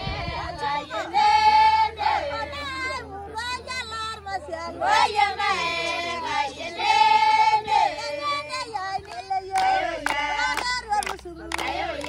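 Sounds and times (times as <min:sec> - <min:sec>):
women singing together: 0:00.0 - 0:12.0
sharp claps: 0:09.0 - 0:12.0.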